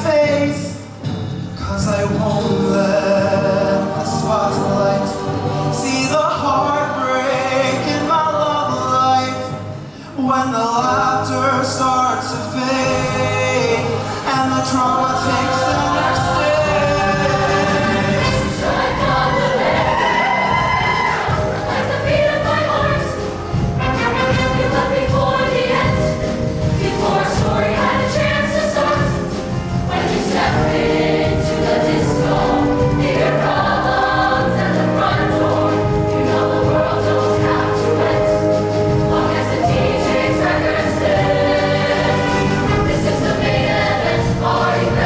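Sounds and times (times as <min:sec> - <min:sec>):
instrumental accompaniment with bass: 0:00.0 - 0:45.0
choir singing sustained chords: 0:02.6 - 0:08.4, 0:12.9 - 0:45.0.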